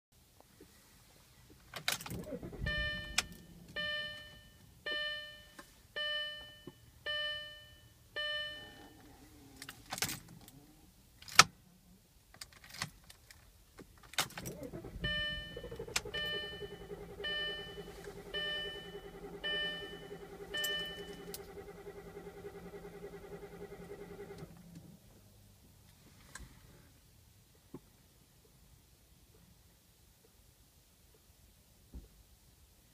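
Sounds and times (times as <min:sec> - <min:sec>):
dashboard warning chime: 0:02.2 - 0:09.0, 0:14.6 - 0:21.4.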